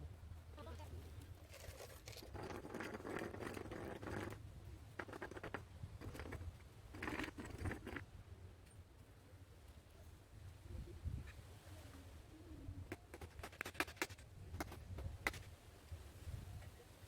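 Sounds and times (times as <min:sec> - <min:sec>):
rustling and scraping: 0:01.4 - 0:04.4, 0:05.0 - 0:08.1, 0:12.9 - 0:15.5.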